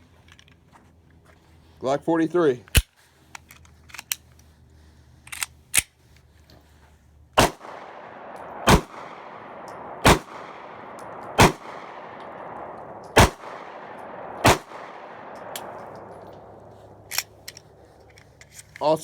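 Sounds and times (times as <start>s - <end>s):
pistol shots: 7.4s - 17.8s.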